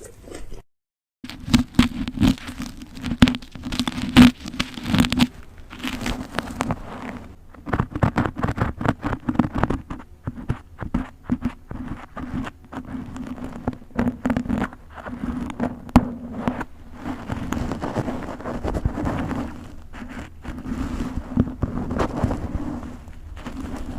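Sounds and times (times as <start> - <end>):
fridge hum: 1.3 - 23.9.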